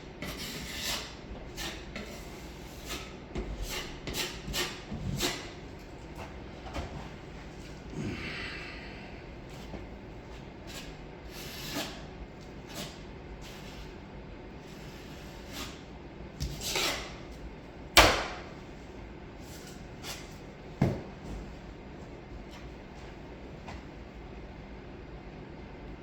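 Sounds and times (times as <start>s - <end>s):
drywall knife scraping: 0.2s - 5.6s, 9.6s - 14.0s, 14.6s - 17.2s.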